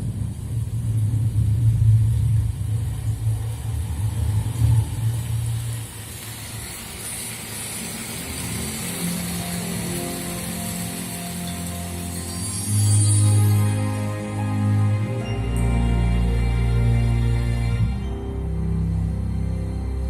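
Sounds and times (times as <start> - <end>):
hiss: 0.0 - 15.4
music: 7.2 - 20.0.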